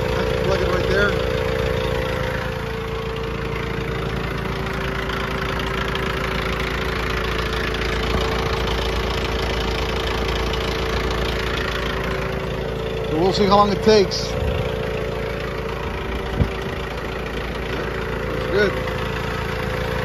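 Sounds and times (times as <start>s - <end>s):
diesel tractor engine idling: 0.0s - 20.0s
tire inflator compressor running: 0.0s - 20.0s.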